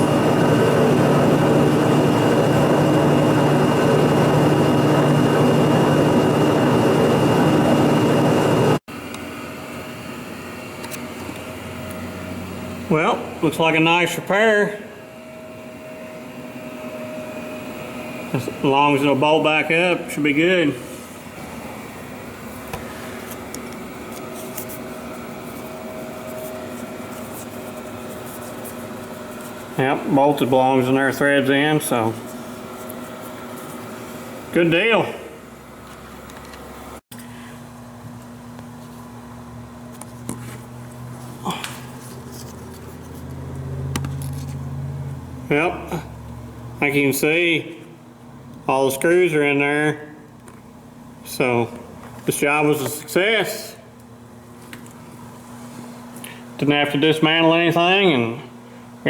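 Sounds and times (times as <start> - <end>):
high whine: 0.0 - 36.5
shop machine humming: 0.0 - 59.0.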